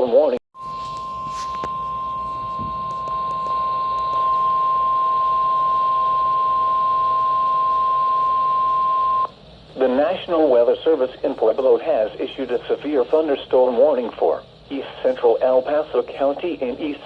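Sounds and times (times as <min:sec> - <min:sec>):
steady alarm tone: 0:00.6 - 0:11.0
light radio hiss: 0:07.6 - 0:17.0.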